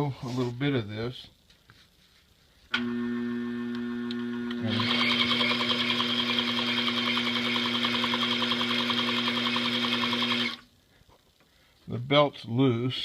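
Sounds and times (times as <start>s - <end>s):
sewing machine motor humming: 2.8s - 10.7s
sewing machine needle chatter: 4.7s - 10.6s.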